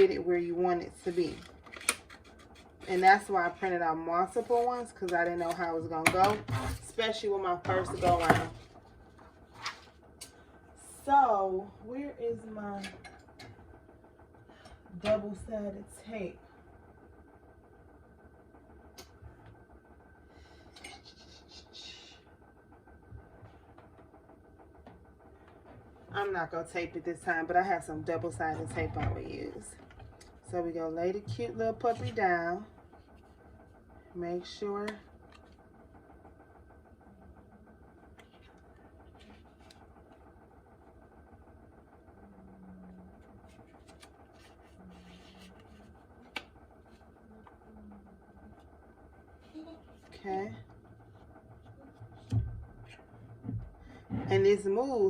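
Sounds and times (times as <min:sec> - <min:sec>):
rustling and scraping of objects: 0:43.2 - 0:47.2.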